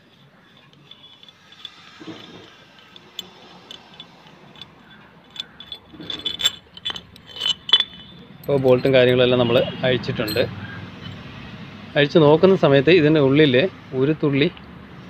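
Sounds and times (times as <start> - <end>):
wrench clicking on bolts: 0.0 - 9.7
metal parts clinking: 0.0 - 11.2.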